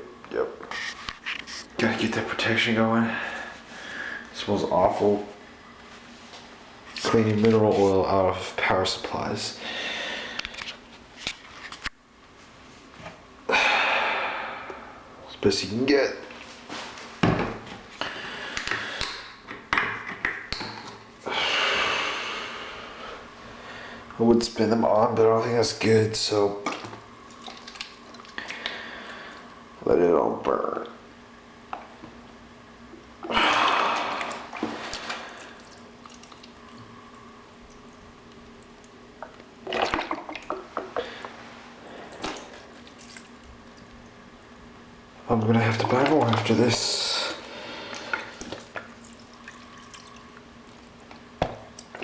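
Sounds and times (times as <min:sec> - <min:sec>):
liquid splashing and dripping: 0:26.6 - 0:28.8, 0:33.6 - 0:36.9, 0:37.6 - 0:40.9, 0:42.1 - 0:44.1, 0:47.9 - 0:52.0.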